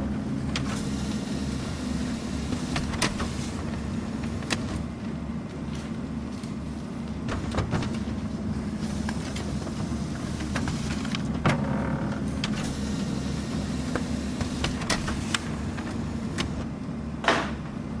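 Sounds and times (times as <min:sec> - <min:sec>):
printer mechanical hum: 0:00.0 - 0:18.0
printer sharp clicks: 0:02.2 - 0:04.8, 0:12.3 - 0:16.6.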